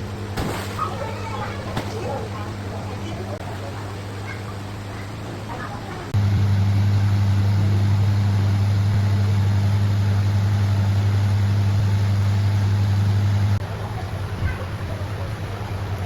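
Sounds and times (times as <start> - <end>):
loud low hum: 0.0 - 16.0.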